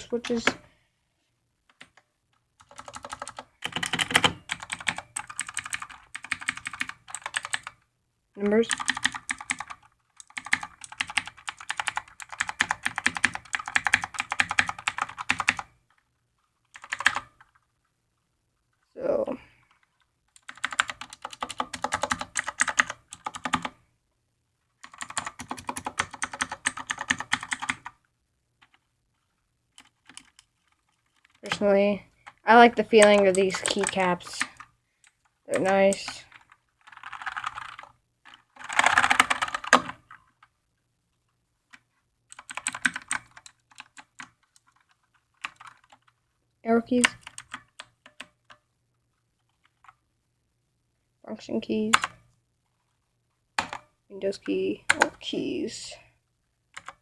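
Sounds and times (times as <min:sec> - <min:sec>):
clicky keyboard typing: 0:02.6 - 0:07.8, 0:08.6 - 0:15.8, 0:16.7 - 0:17.6, 0:19.8 - 0:23.8, 0:24.8 - 0:28.0, 0:29.7 - 0:40.5, 0:41.7 - 0:46.2, 0:47.0 - 0:48.6, 0:53.6 - 0:53.9, 0:54.8 - 0:55.2, 0:56.7 - 0:57.0.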